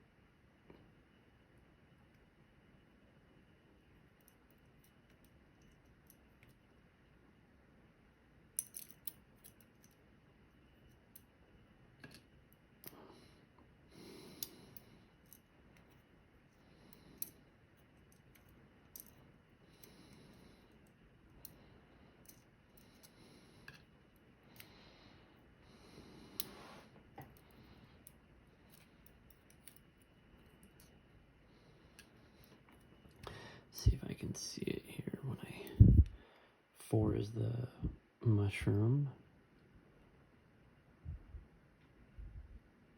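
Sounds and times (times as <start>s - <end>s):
tiny metal parts clicking: 8.6s - 10.0s, 16.9s - 17.4s, 18.0s - 19.2s, 27.3s - 31.0s.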